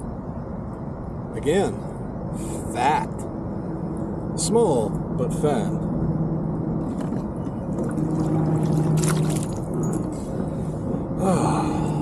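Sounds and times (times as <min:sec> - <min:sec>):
steady low hum: 0:00.0 - 0:12.0
water sloshing around kayak hull: 0:07.8 - 0:09.6.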